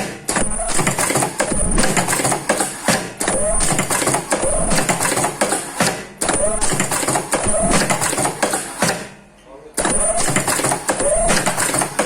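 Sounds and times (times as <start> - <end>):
machine mechanism clattering: 9.8 - 12.0.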